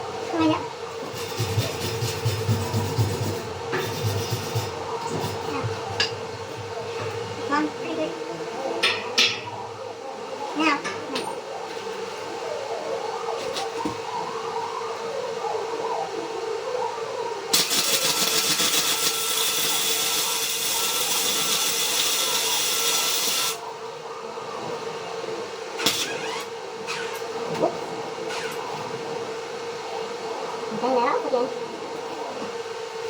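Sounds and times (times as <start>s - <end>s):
constant hum: 0.0s - 33.0s
arc welder crackling: 0.5s - 6.8s, 17.5s - 23.6s, 25.8s - 27.3s.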